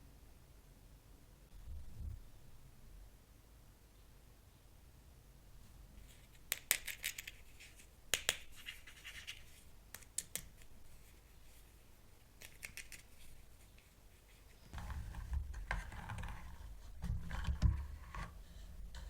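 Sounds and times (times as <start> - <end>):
plastic toy parts clicking: 6.5 - 7.4, 12.4 - 13.1.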